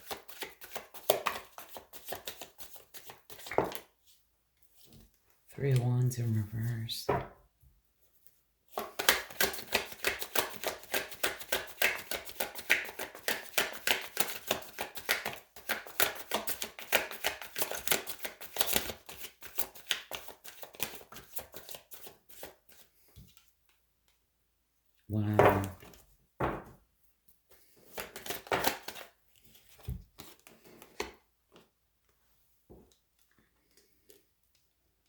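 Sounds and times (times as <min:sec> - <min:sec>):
cards being shuffled: 0:00.0 - 0:03.9, 0:08.7 - 0:23.5, 0:27.7 - 0:31.7.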